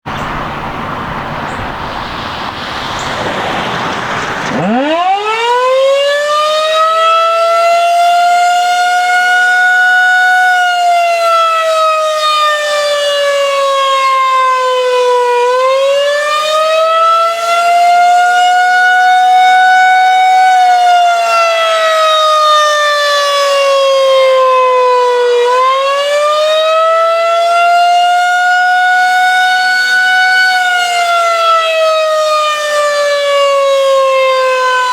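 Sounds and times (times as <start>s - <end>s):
steady rushing noise: 0.1s - 5.6s
warning siren wailing: 0.1s - 34.9s.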